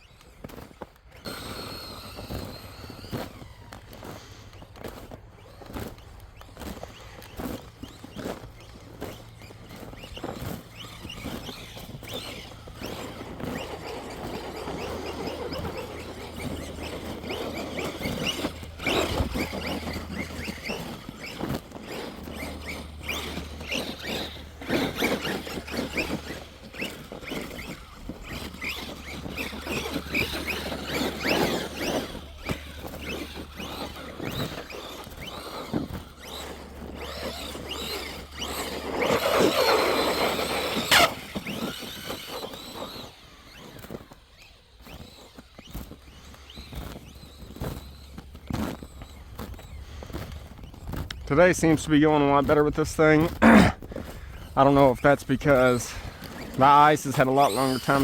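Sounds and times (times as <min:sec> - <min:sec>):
toy truck motor whining: 0:00.0 - 0:58.0
tyres crunching on ice: 0:00.0 - 0:58.0.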